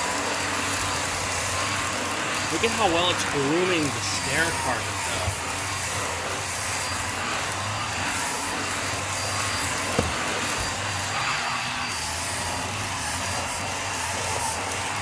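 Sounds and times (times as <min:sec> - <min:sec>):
vacuum cleaner running: 0:00.0 - 0:15.0
vacuum tool brushing carpet: 0:02.2 - 0:11.6
short knock: 0:09.6 - 0:10.8.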